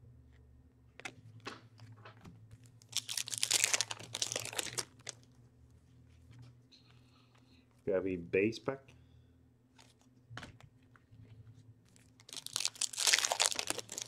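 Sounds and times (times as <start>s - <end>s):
card pack wrapper rustling: 2.7s - 5.3s, 11.9s - 14.0s.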